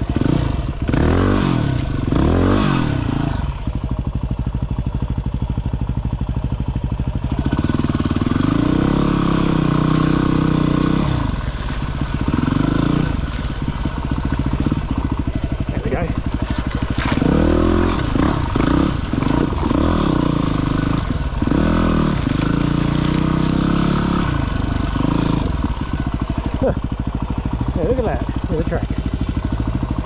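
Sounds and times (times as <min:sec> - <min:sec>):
dirt bike engine revving: 0:00.0 - 0:30.0.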